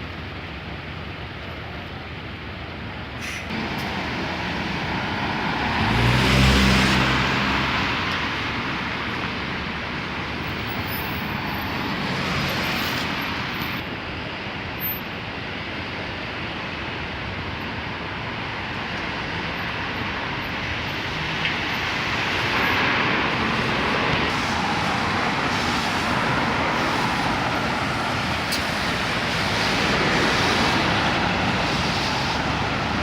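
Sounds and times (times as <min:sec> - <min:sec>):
tyres on wet road: 0:00.0 - 0:33.0
vehicle passing: 0:04.0 - 0:08.1
rain hiss: 0:22.8 - 0:33.0.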